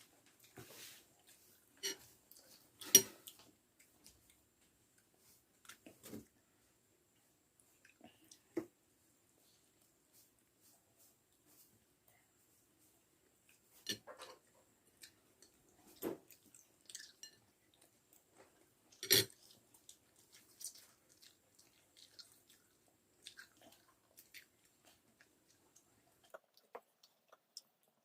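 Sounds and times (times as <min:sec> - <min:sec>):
person chewing food: 0:00.4 - 0:06.4, 0:13.4 - 0:28.0.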